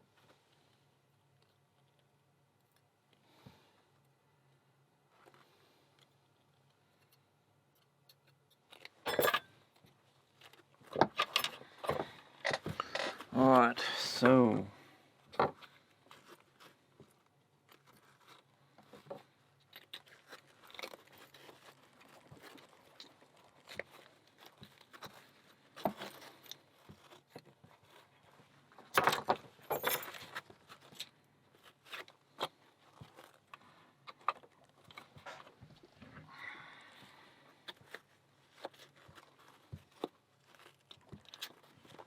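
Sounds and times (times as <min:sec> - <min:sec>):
small metal parts clicking and rattling: 0:07.0 - 0:13.2, 0:17.7 - 0:35.5
metal parts clattering: 0:09.1 - 0:09.4.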